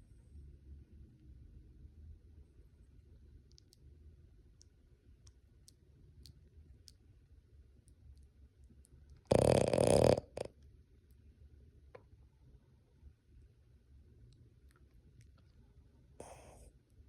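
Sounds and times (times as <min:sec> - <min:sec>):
dog snoring: 0:09.3 - 0:10.5, 0:16.2 - 0:16.7
quiet breathing: 0:15.3 - 0:17.0.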